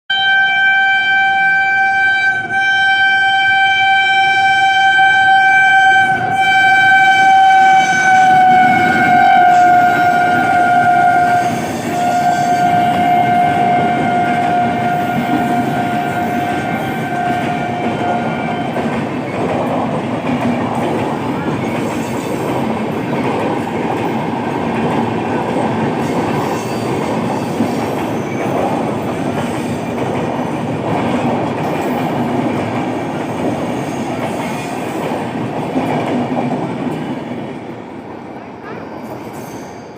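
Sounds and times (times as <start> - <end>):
locomotive horn blast: 0.1 - 18.9
train rumble and wheel clatter: 0.1 - 39.9.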